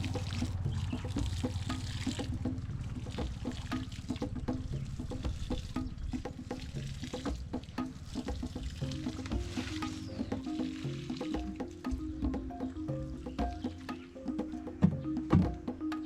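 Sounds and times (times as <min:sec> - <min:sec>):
water pouring into soil: 0:00.0 - 0:11.4.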